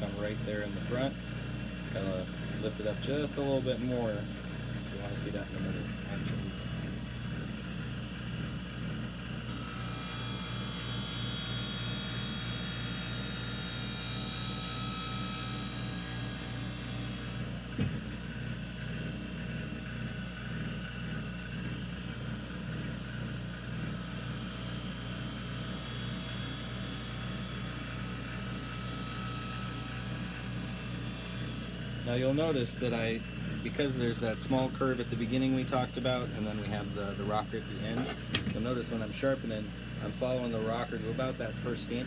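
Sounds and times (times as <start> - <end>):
grinding machine motor hum: 1.9 - 42.0
blade grinding on wheel: 9.5 - 17.5, 23.8 - 31.7
short knock: 17.8 - 18.0, 38.0 - 38.6.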